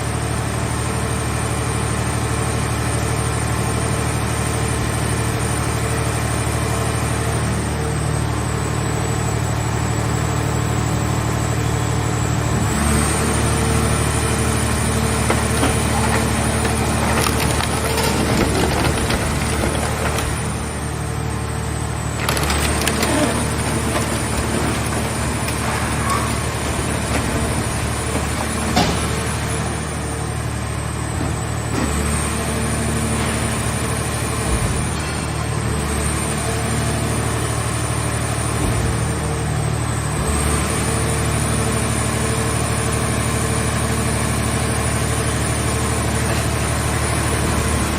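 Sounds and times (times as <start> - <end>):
baler engine running: 9.5 - 31.8
scrap metal crackling and snapping: 14.0 - 30.0.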